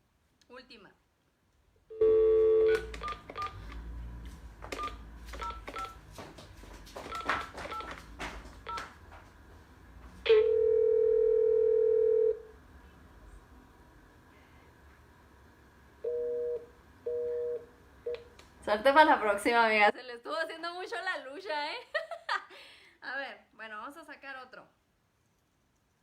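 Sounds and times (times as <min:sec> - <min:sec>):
steady phone tone: 0:01.9 - 0:03.7, 0:10.3 - 0:12.5, 0:16.0 - 0:17.7
phone call tones: 0:01.9 - 0:03.8, 0:10.3 - 0:12.5, 0:16.0 - 0:17.7
clicks and brief beeps: 0:04.8 - 0:06.0.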